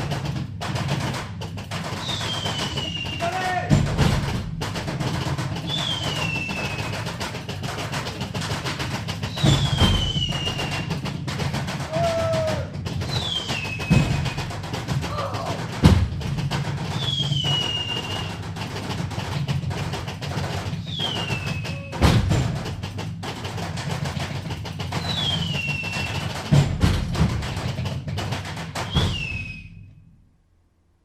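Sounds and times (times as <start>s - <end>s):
falling whistle: 2.0s - 3.6s, 5.7s - 7.1s, 9.3s - 11.0s, 11.9s - 14.4s, 17.0s - 18.4s, 20.8s - 22.2s, 25.0s - 26.4s, 28.9s - 30.0s.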